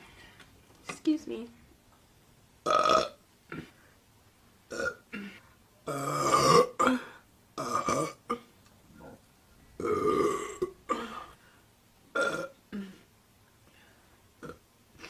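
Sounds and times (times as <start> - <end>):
woman burping: 2.7 - 3.8, 4.7 - 9.2, 9.8 - 11.4, 12.1 - 13.1.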